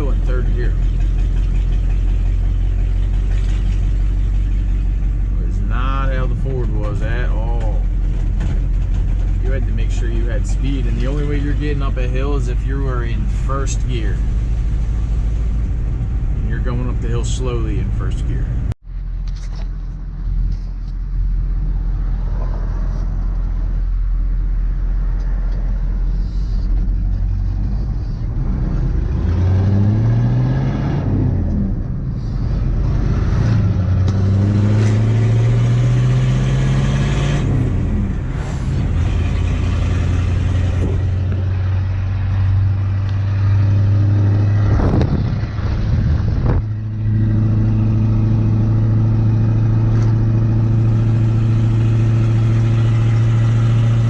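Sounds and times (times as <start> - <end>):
diesel engine under load: 0.0 - 19.4, 20.0 - 54.0.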